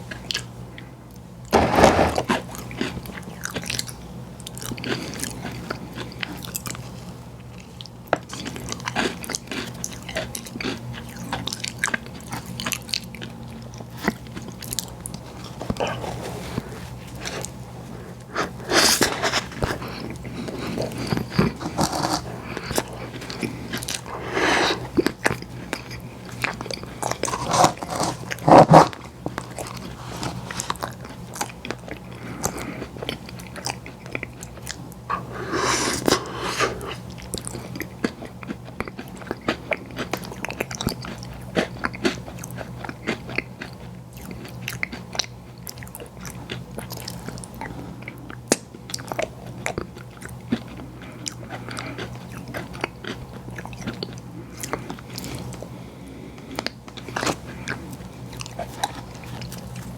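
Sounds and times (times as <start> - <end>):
wet sticky chewing: 56.5 - 59.9.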